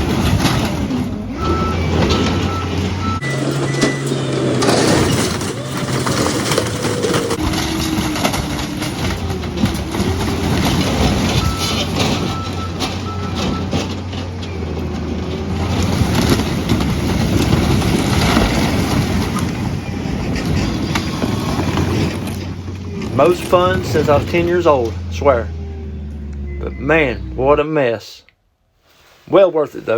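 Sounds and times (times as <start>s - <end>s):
metal creaking and squealing: 0.0s - 16.6s, 17.2s - 27.8s
crunching and scraping of camper: 0.0s - 27.1s
skid steer engine running hard: 0.0s - 27.6s.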